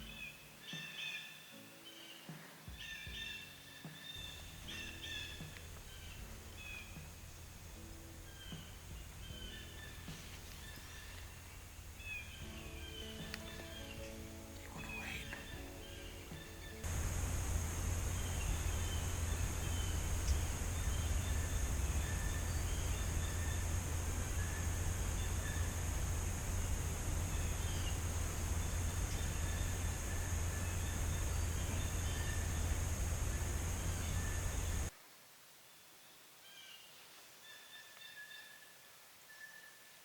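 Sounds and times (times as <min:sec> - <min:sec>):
faint bird calls: 0:00.0 - 0:34.9
constant high hiss: 0:00.0 - 0:38.1
steady low rumble: 0:04.3 - 0:34.9.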